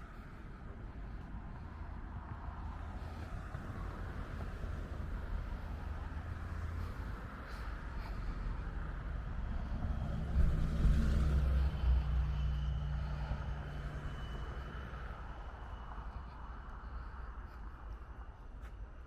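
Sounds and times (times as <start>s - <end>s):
vehicle driving past: 2.6s - 17.2s.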